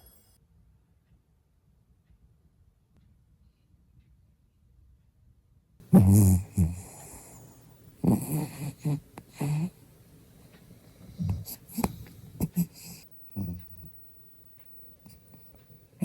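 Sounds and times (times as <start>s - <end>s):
dog snoring: 5.8s - 9.8s, 10.9s - 14.0s
dog breathing quietly: 5.8s - 14.0s.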